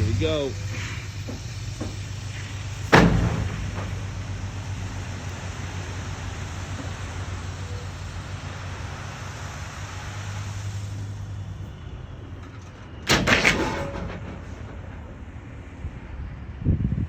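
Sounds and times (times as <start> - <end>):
debris crashing into dumpster: 0.1 - 5.2, 12.4 - 16.0.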